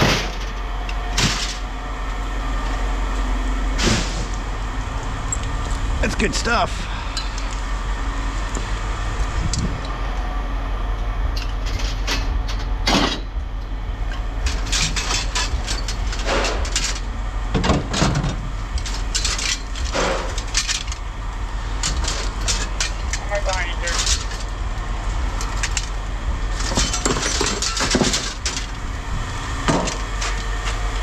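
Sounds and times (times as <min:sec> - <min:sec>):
scrap metal clanking: 0:00.0 - 0:01.7, 0:03.8 - 0:04.5, 0:11.4 - 0:13.4, 0:14.1 - 0:28.9, 0:29.6 - 0:31.0
vehicle engine idling: 0:00.0 - 0:31.0.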